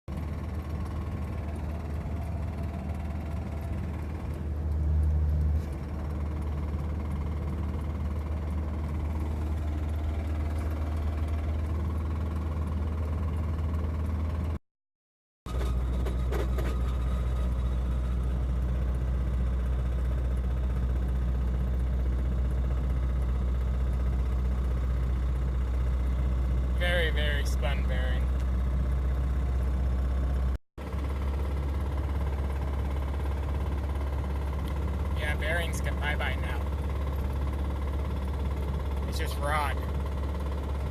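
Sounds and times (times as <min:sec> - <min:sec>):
car engine low drone: 0:00.1 - 0:14.6, 0:15.5 - 0:40.9.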